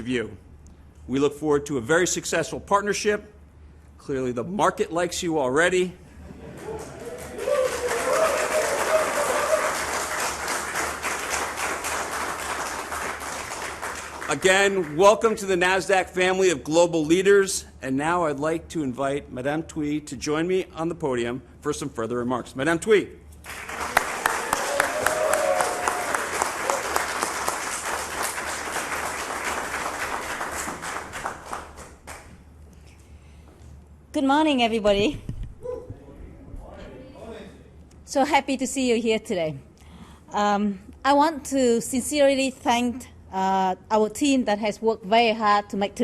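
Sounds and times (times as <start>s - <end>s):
audience applauding: 6.6s - 15.0s, 23.5s - 32.3s.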